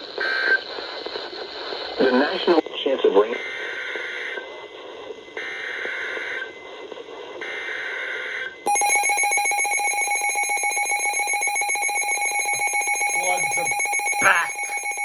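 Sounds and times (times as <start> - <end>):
steady electronic alarm tone: 7.5 - 15.0
buzzy digital header bursts: 13.1 - 14.7.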